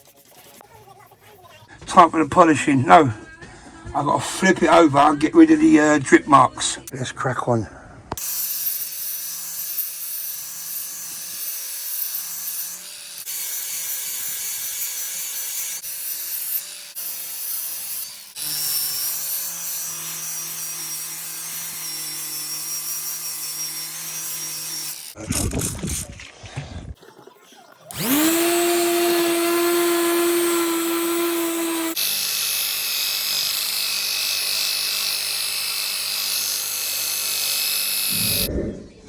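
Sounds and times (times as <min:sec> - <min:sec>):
electric sander on wood: 0:08.2 - 0:25.2, 0:27.9 - 0:38.5.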